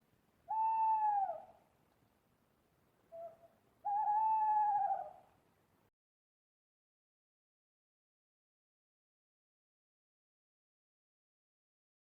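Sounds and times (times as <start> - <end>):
owl hooting: 0.5 - 1.6, 3.1 - 5.3.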